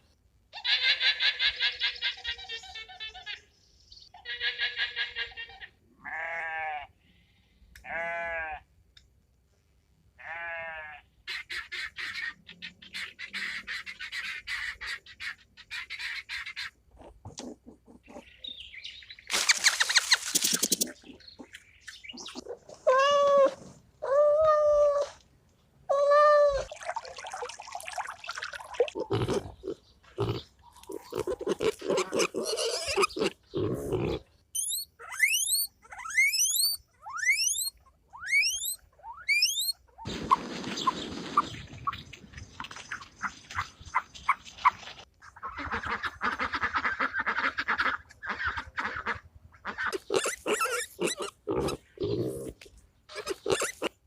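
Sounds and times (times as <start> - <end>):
rapid animal chattering: 19.4 - 22.8, 28.9 - 37.7, 49.8 - 54.0
animal pitched calls: 28.8 - 42.0, 43.9 - 54.0
quick rising chirps: 34.6 - 39.7.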